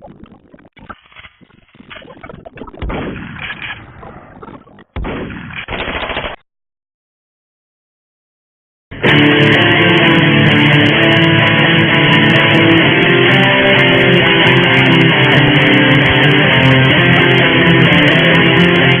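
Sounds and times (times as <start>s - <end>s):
strummed guitar music: 9.0s - 19.0s.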